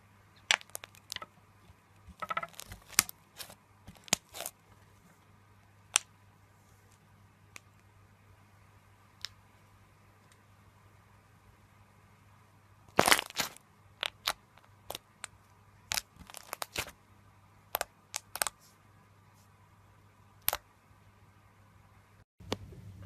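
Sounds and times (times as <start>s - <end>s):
slime popping and crackling: 0.4s - 1.3s, 2.0s - 4.6s, 12.9s - 15.3s, 15.9s - 17.0s, 17.7s - 18.5s.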